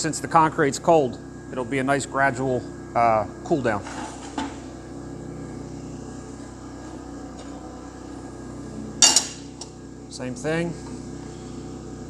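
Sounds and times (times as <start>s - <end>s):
steady machine hum: 0.0s - 12.0s
sharp metallic clank: 9.0s - 9.6s.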